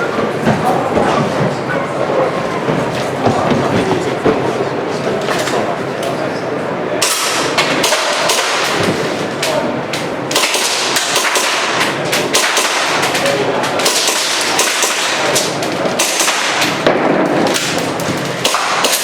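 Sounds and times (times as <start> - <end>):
airsoft pistol shots: 7.0 - 8.8, 10.3 - 17.8, 18.4 - 19.0.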